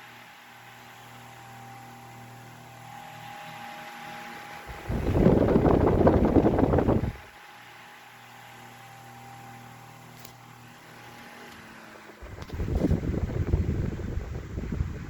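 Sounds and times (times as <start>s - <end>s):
fan motor hum: 0.0s - 15.0s
fan air buffeting microphone: 4.5s - 7.3s, 11.0s - 15.0s.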